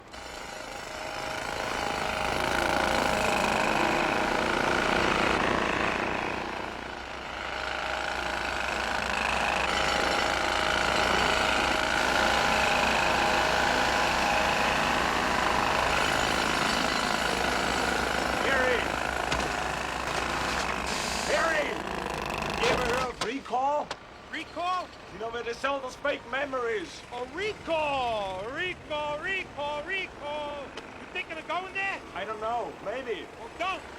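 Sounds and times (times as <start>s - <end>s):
pneumatic drills hammering: 0.0s - 24.2s, 30.6s - 31.1s
heavy machinery running: 0.0s - 25.2s.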